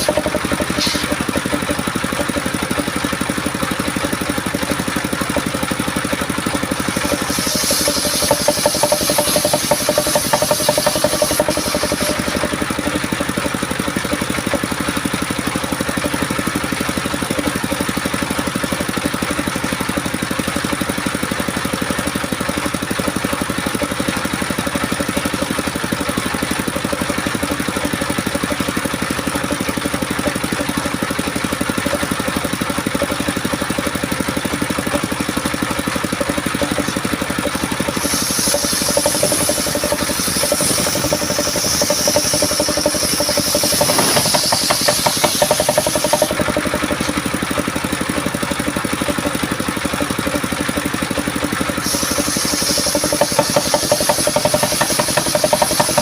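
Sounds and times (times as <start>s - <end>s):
saw blade rasping through wood: 0.0s - 2.6s, 6.6s - 13.1s, 36.4s - 47.3s, 51.7s - 56.0s
circular saw running: 0.0s - 56.0s.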